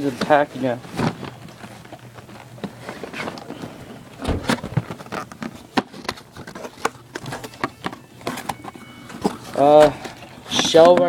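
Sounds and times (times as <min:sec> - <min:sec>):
cardboard rustling and scraping: 0:00.0 - 0:11.0
heavy thump: 0:04.2 - 0:04.8.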